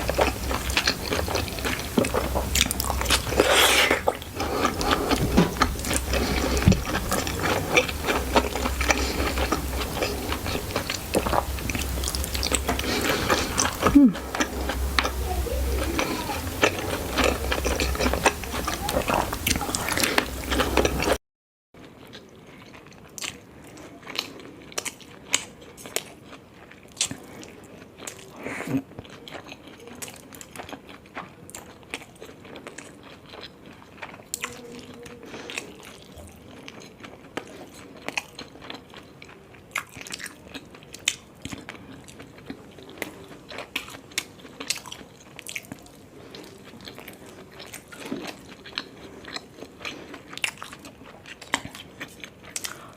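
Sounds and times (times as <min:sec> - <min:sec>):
person chewing food: 0:00.0 - 0:21.2, 0:21.9 - 0:52.9
wet mouth clicks: 0:00.0 - 0:21.2.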